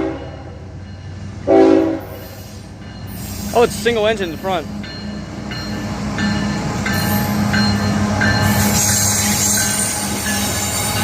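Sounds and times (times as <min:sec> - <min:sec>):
diesel locomotive drone: 0:00.0 - 0:11.0
railcars rumbling: 0:00.0 - 0:11.0
train wheel squeals: 0:02.0 - 0:04.3, 0:04.9 - 0:11.0.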